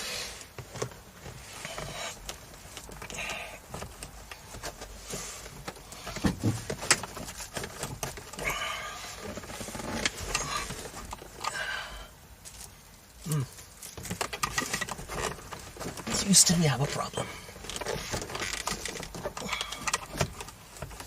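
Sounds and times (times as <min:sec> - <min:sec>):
plastic clicking and rubbing: 0:00.5 - 0:08.5, 0:13.5 - 0:16.3, 0:17.5 - 0:21.0.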